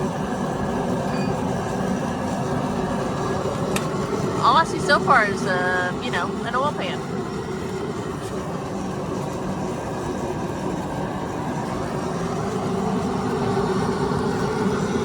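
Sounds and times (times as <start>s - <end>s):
mechanical drone with hum: 0.0s - 15.0s.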